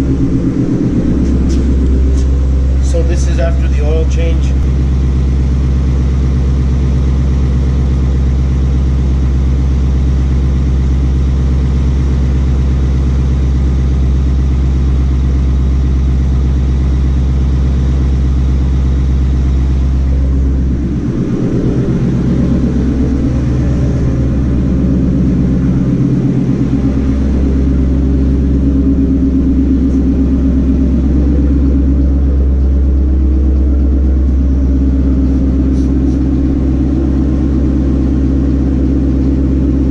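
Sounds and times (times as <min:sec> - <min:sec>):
road noise: 0:00.0 - 0:04.9, 0:19.2 - 0:39.9
car engine drone: 0:00.0 - 0:39.9.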